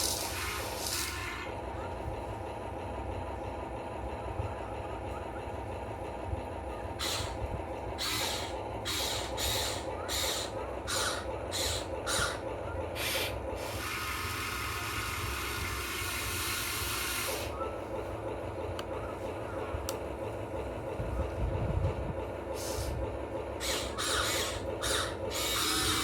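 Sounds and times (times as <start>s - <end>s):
electric motors and gearboxes: 0.0s - 1.6s, 7.0s - 7.4s, 8.0s - 17.7s, 22.6s - 26.0s
steady low hum: 0.0s - 26.0s.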